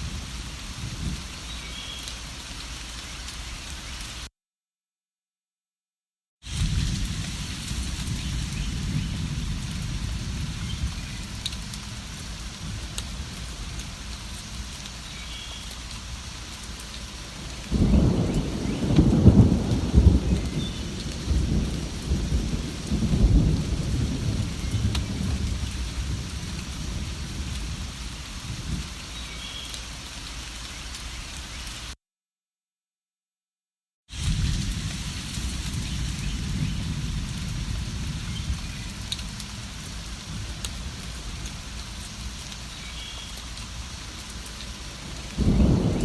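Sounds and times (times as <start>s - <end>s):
steady rain: 0.0s - 4.3s, 6.4s - 32.0s, 34.1s - 46.0s
thunder rumbling: 6.5s - 14.3s, 17.3s - 28.9s, 34.2s - 42.0s, 44.9s - 46.0s.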